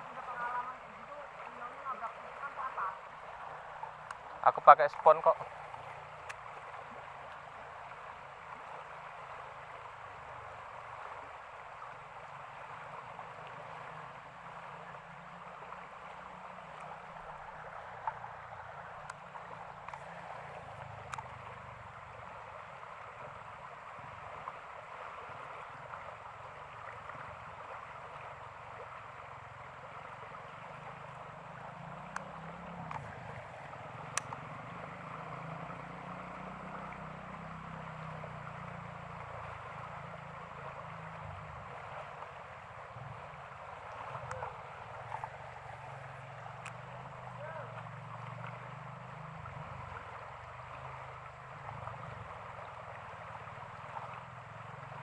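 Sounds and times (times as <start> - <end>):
floodwater rushing in stream: 0.0 - 55.0
faint clicks: 5.7 - 6.5, 21.0 - 21.4, 32.1 - 33.1, 34.0 - 34.5, 46.6 - 46.8.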